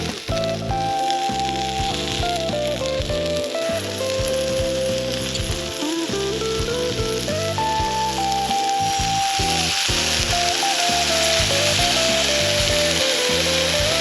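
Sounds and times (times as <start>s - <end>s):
background music: 0.0s - 14.0s
food sizzling in a pan: 3.3s - 7.0s, 8.1s - 14.0s.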